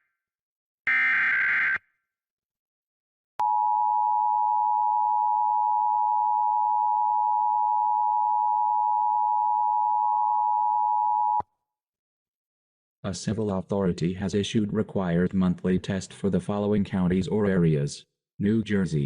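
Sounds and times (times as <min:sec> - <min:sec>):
two-tone alert alarm: 0:00.9 - 0:01.8.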